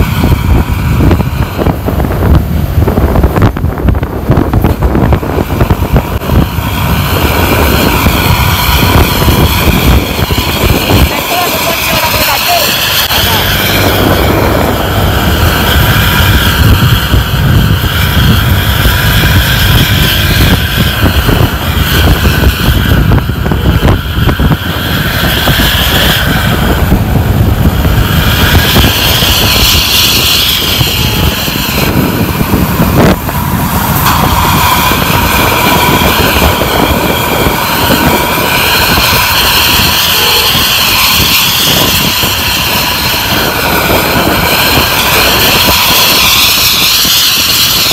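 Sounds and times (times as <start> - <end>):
high whine: 0.0 - 47.9
vehicle rumble on road: 12.8 - 47.9.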